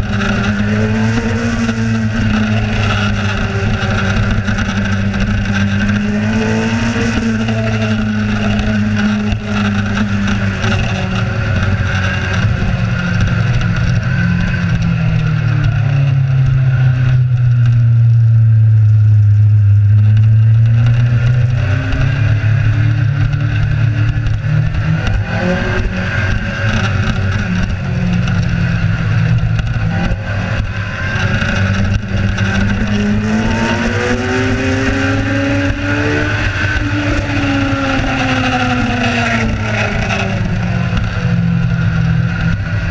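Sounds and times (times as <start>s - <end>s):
motorcycle engine running: 0.0s - 42.9s
wind noise: 0.0s - 42.9s.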